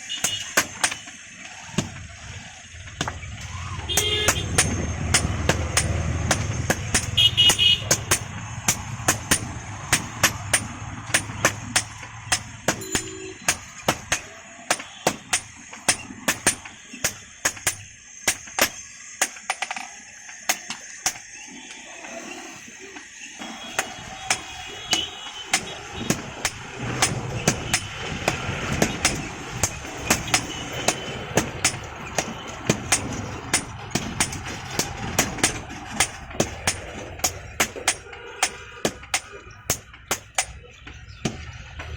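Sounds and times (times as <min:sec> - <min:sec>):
hammer striking iron on anvil: 0:00.1 - 0:21.3, 0:23.8 - 0:41.9.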